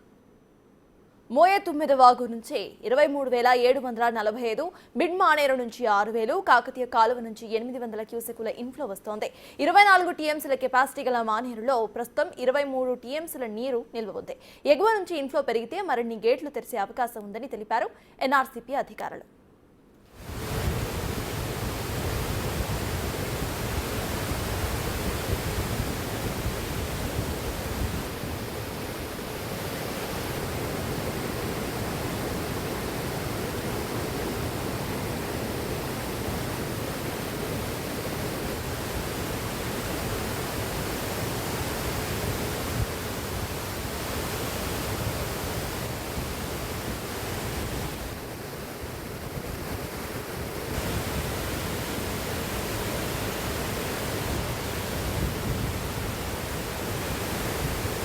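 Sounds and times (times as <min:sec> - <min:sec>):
water rushing through spillway: 0:20.2 - 0:58.0.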